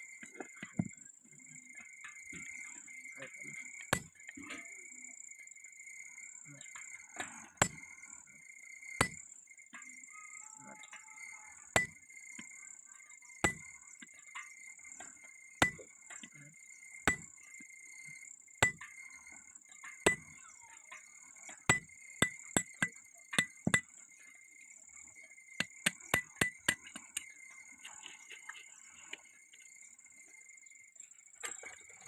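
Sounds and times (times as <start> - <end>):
hammer striking metal on anvil: 3.9 - 4.1, 7.6 - 7.9, 9.0 - 9.2, 11.8 - 12.0, 13.4 - 13.7, 15.6 - 15.8, 17.1 - 17.3, 18.6 - 18.9, 20.1 - 20.3, 21.7 - 23.9, 25.6 - 27.0.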